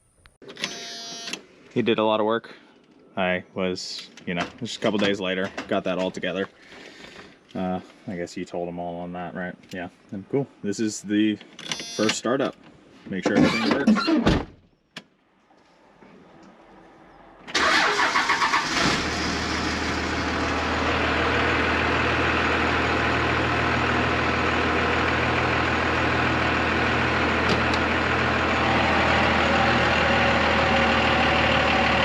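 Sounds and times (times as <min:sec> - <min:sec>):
diesel engine cranking: 0:16.4 - 0:32.0
diesel engine idling: 0:16.6 - 0:32.0.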